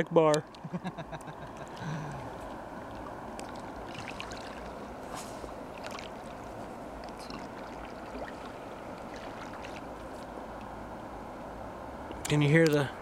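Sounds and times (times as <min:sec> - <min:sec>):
small water splashes: 0:00.4 - 0:10.8.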